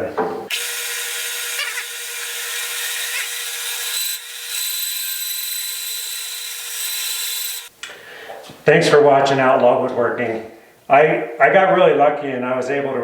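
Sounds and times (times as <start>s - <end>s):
bandsaw cutting wood: 0.5s - 7.7s.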